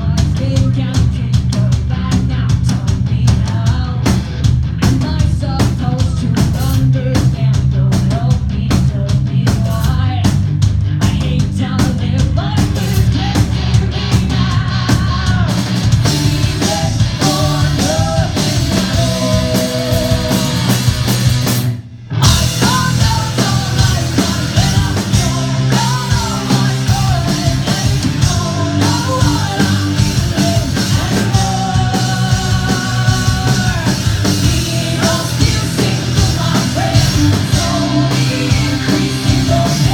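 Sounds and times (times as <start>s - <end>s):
drum kit: 0.0s - 39.9s
rock band playing live: 0.0s - 39.9s
person singing: 11.1s - 21.0s, 22.2s - 39.9s.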